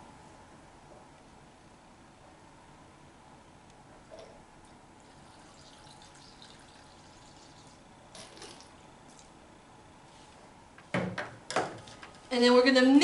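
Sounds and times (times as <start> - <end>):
liquid pouring and dripping: 5.0 - 9.3.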